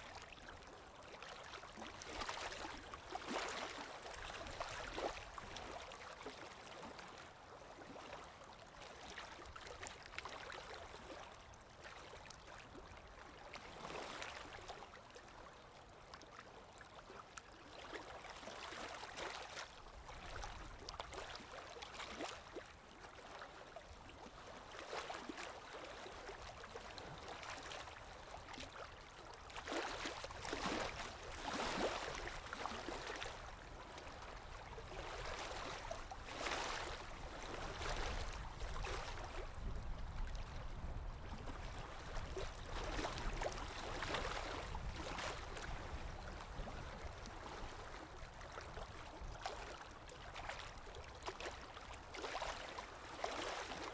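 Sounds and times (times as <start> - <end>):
stream water flowing: 29.4 - 40.0.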